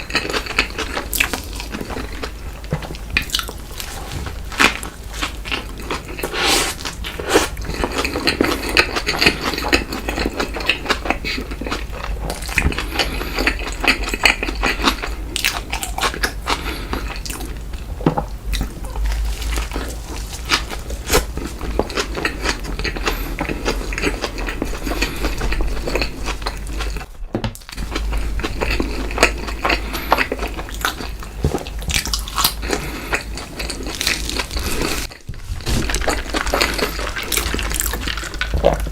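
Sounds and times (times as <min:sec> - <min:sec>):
person chewing crunchy food: 0:00.0 - 0:38.9.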